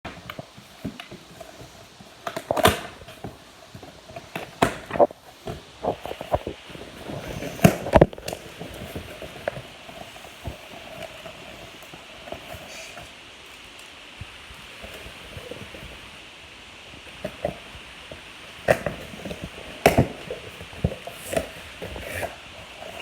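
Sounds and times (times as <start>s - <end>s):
cardboard box being opened: 18.6s - 23.0s.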